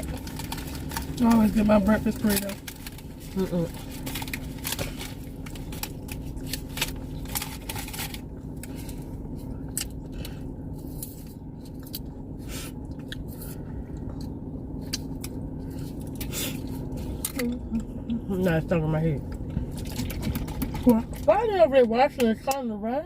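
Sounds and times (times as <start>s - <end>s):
car cabin hum: 0.0s - 23.0s
wet chewing: 19.2s - 21.3s.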